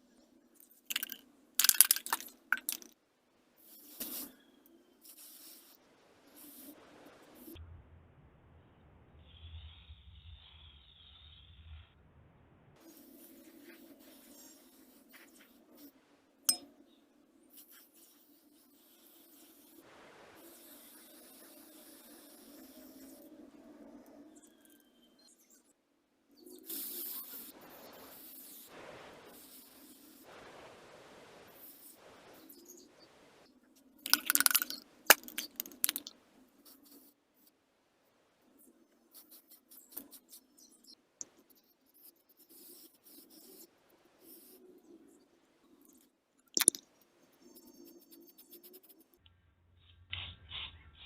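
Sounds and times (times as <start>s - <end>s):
soft hiss: 0.0s - 7.6s
light taps of small hard objects: 0.9s - 2.9s, 34.1s - 36.1s, 46.6s - 46.8s
small metal parts clinking: 0.9s - 2.9s, 34.1s - 36.1s
sharp ringing clink: 16.5s - 16.8s.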